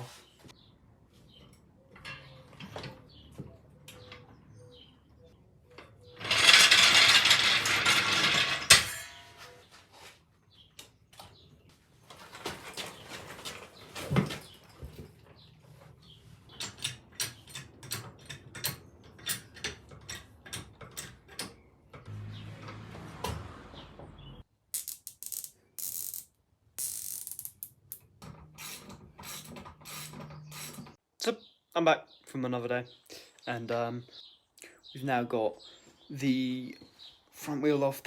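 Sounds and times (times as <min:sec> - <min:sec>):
ratchet clicks: 0:24.8 - 0:28.0.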